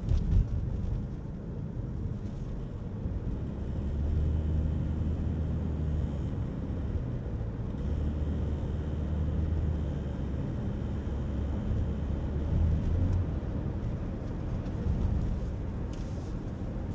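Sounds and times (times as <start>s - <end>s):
steady rumble: 0.0s - 4.2s, 11.4s - 16.9s.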